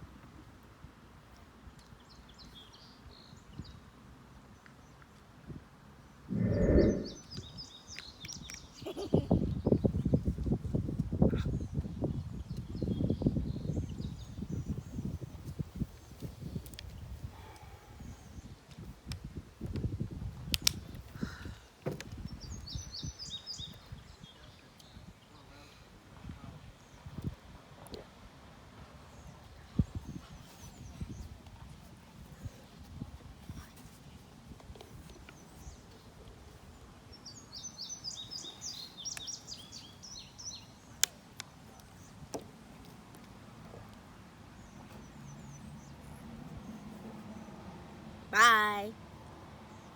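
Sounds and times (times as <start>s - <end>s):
wind rumble: 6.3s - 7.3s
songbird calling: 6.3s - 7.6s
songbird chirping: 6.3s - 9.3s.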